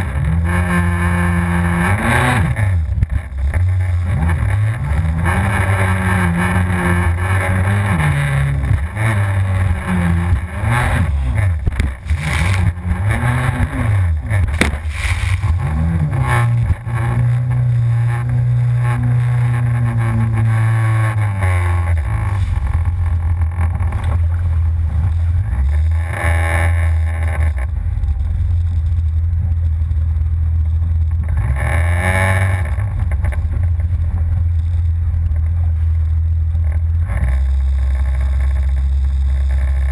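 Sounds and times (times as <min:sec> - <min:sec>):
personal watercraft engine revving: 0:00.0 - 0:29.5
bursts of rushing noise: 0:11.5 - 0:13.6, 0:14.4 - 0:16.8.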